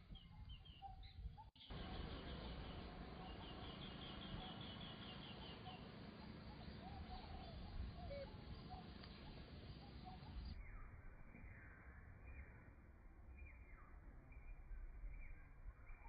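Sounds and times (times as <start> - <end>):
birds chirping: 0.0 - 12.6.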